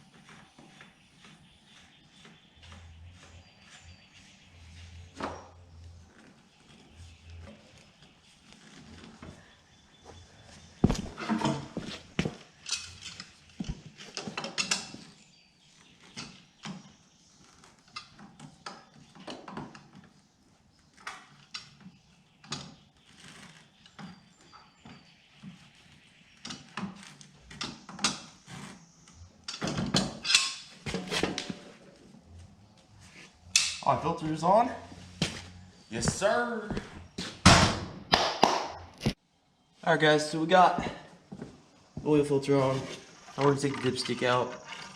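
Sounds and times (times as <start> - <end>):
clinks and knocks of engine parts: 10.8 - 15.1, 43.3 - 44.9.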